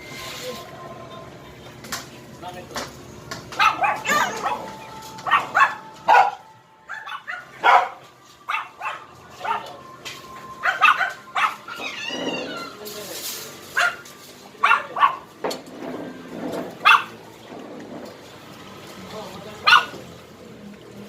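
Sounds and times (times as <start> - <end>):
dog barking and yipping: 3.5 - 9.7, 10.6 - 12.5, 13.7 - 15.3, 16.8 - 17.2, 19.6 - 20.0
dog whining: 3.6 - 7.9, 10.6 - 12.9.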